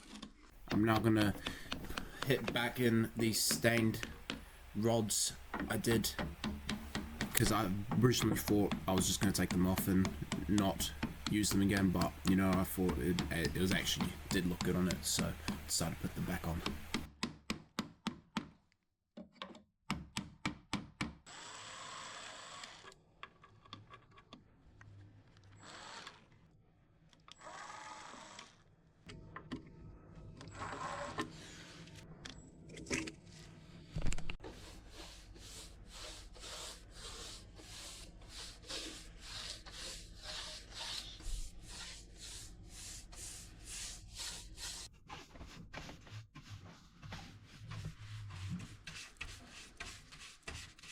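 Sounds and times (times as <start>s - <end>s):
wooden knocks and clicks: 0.1s - 4.5s, 5.4s - 18.6s.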